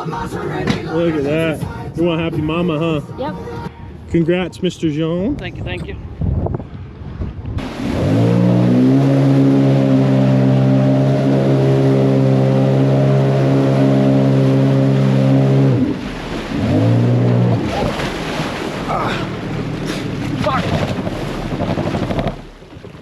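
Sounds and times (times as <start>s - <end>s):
vehicle engine revving: 7.6s - 22.4s.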